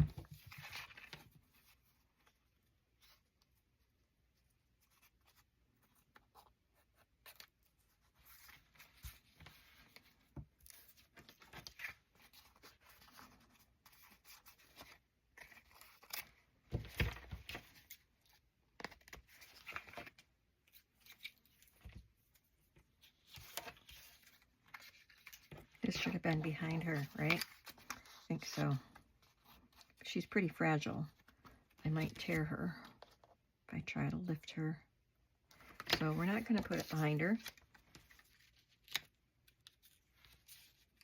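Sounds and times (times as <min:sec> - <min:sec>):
paper rustling and scraping: 0:04.8 - 0:30.1, 0:35.5 - 0:41.0.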